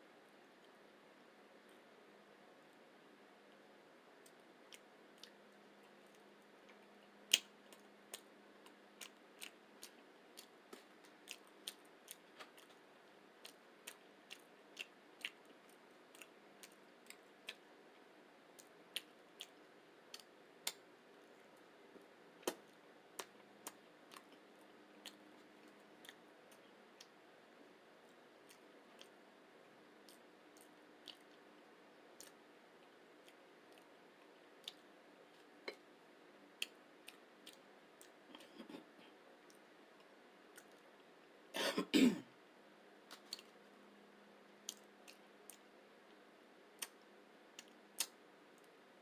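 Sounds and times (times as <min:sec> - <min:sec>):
person chewing food: 0:04.3 - 0:20.8, 0:22.4 - 0:27.2, 0:28.4 - 0:29.2, 0:30.0 - 0:31.6, 0:32.2 - 0:35.9, 0:36.5 - 0:41.0, 0:43.1 - 0:43.6.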